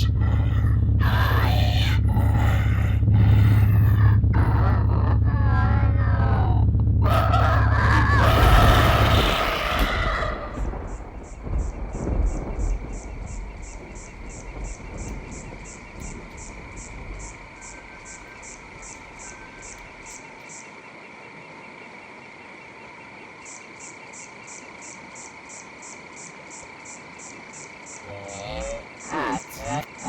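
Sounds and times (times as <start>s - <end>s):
low rumble: 0.0s - 20.1s
crickets chirping: 0.0s - 30.0s.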